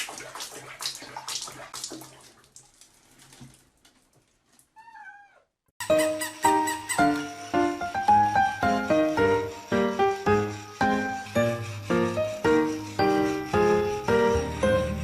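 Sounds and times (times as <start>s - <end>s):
water splashing and sloshing: 0.0s - 4.8s
cat meowing: 4.8s - 5.5s.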